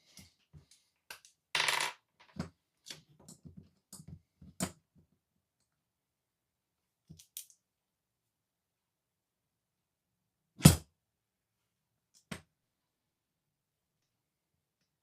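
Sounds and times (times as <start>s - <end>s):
sharp clicks of small objects: 7.1s - 7.6s.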